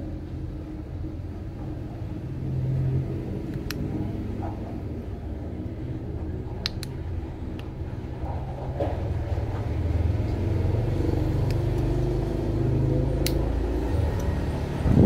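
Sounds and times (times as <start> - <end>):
low background rumble: 12.8 - 15.0.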